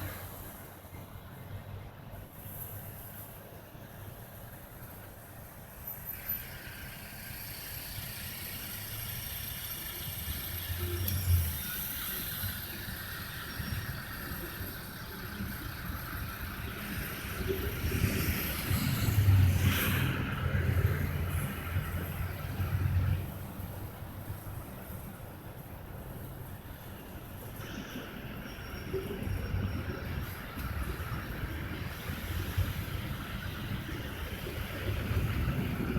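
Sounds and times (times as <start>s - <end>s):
highway traffic: 0.0s - 35.9s
heavy truck passing: 6.6s - 24.9s.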